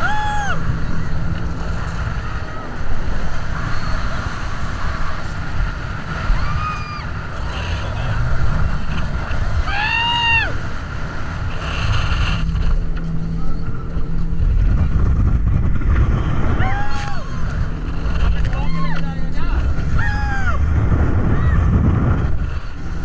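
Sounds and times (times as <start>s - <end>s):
speedboat engine rumble: 0.0s - 23.0s
wind on microphone: 0.0s - 23.0s.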